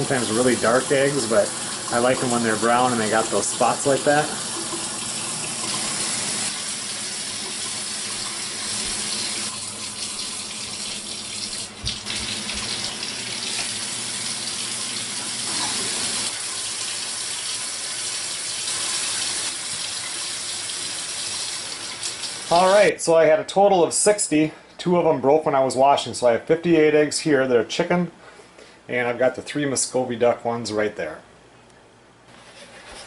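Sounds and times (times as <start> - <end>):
tap water running into sink: 0.0 - 22.8.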